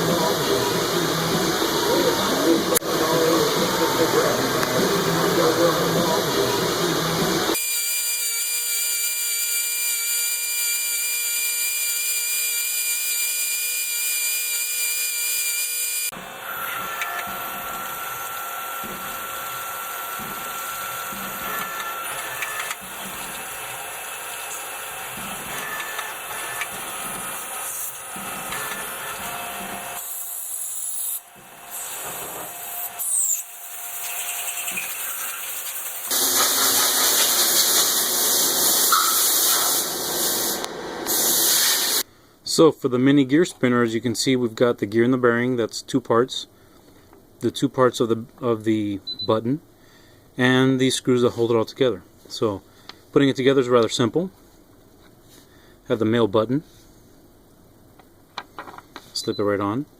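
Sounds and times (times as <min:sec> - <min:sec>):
metal cutting noise: 0:00.0 - 0:42.0
power tool motor whine: 0:07.3 - 0:42.0.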